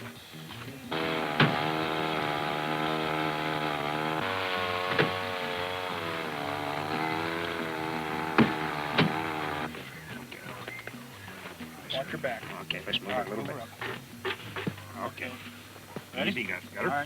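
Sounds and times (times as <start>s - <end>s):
sharp cracks: 0.9s - 9.7s
small gasoline engine running: 0.9s - 9.8s.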